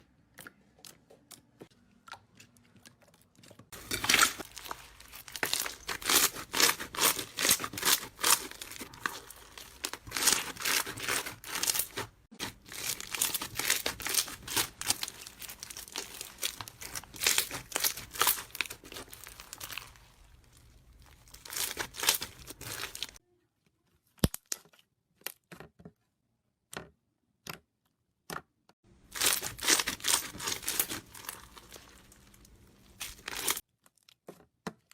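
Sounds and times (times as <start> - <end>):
slime crackling and popping: 3.8 - 23.2, 29.1 - 33.6.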